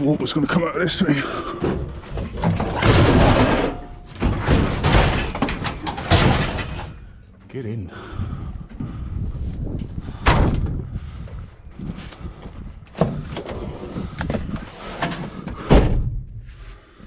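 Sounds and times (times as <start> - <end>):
metal clunks and knocks: 1.3 - 7.2
loud slams: 2.4 - 7.1, 10.2 - 10.8, 15.7 - 16.3.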